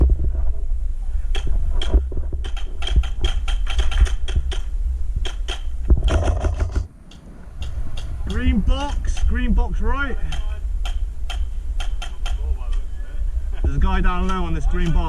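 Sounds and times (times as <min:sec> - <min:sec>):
low rumble on microphone: 0:00.0 - 0:15.0
sharp clicks and snaps: 0:01.3 - 0:08.1, 0:10.3 - 0:12.8, 0:14.2 - 0:15.0.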